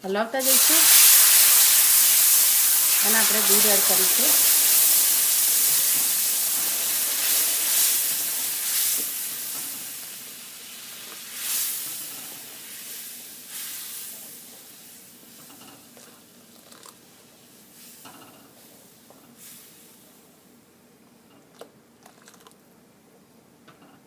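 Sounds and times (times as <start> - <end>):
loud sizzling hiss: 0.4 - 15.6, 17.5 - 20.4
milk pouring: 16.0 - 17.0, 21.6 - 22.6.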